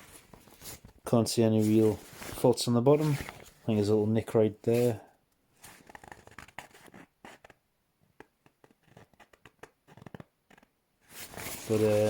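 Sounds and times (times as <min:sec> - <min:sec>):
jacket fabric rustling: 0:00.0 - 0:07.6, 0:10.0 - 0:12.0.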